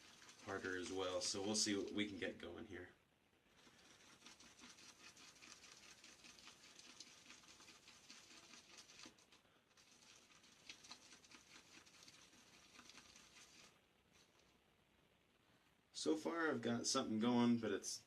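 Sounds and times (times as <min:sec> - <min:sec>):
shaving brush whisking lather: 0:00.0 - 0:02.4, 0:03.6 - 0:14.4.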